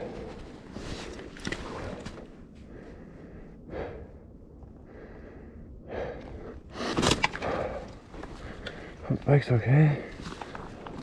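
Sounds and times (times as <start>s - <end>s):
man breathing heavily: 0.0s - 10.8s
low steady rumble: 0.0s - 11.0s.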